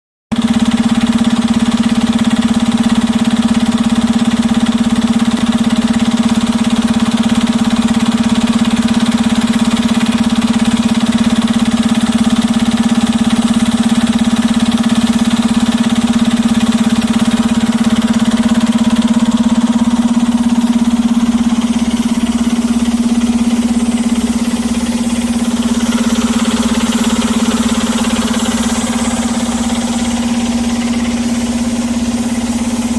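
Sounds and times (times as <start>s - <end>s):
heavy machine engine humming: 5.6s - 32.9s.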